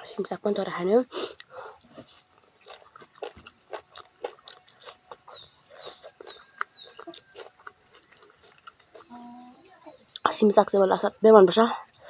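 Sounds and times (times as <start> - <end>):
wet chewing and lip-smacking: 1.2 - 12.0
high falling chirps: 5.1 - 7.5.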